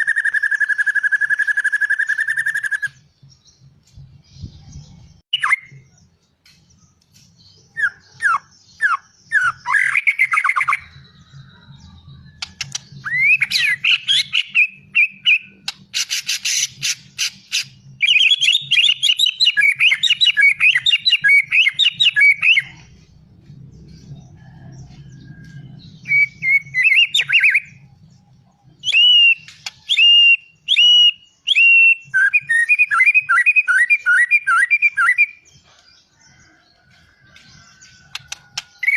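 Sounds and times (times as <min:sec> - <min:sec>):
songbird singing whistled phrases: 0:00.0 - 0:03.1, 0:04.4 - 0:06.0, 0:07.6 - 0:22.8, 0:26.0 - 0:27.8, 0:28.8 - 0:35.4
bird clicking notes: 0:38.1 - 0:38.9.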